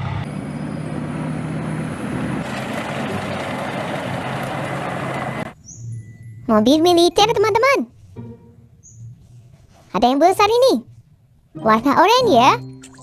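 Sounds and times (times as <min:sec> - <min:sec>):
rushing noise: 0:00.0 - 0:05.6
tank engine rumble: 0:00.0 - 0:05.6.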